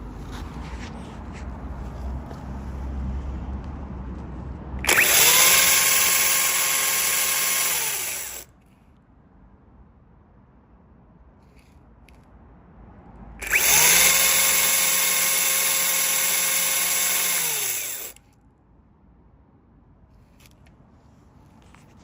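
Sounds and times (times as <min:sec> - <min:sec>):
cordless chainsaw running: 0:04.8 - 0:08.5, 0:13.4 - 0:18.2.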